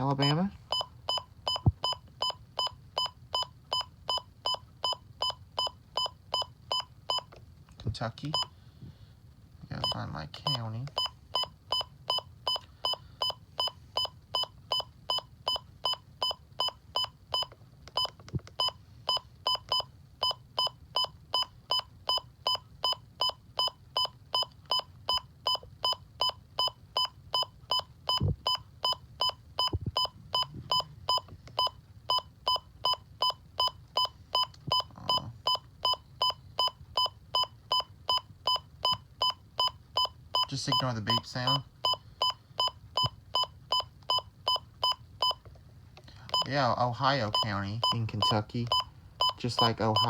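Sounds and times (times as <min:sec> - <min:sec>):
radio key beep: 0:40.4 - 0:42.4.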